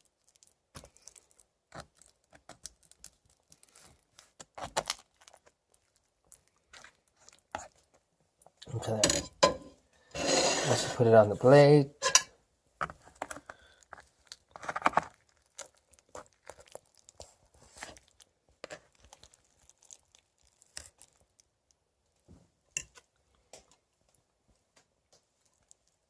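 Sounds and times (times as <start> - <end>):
utensil scraping food tray: 9.5 - 11.1.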